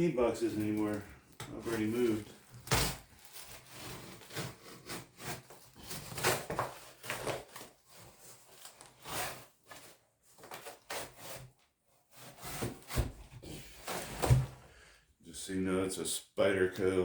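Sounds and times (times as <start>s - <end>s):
knife cutting cardboard: 1.6s - 11.5s, 12.1s - 14.6s
cardboard scraping and rustling: 1.6s - 14.6s.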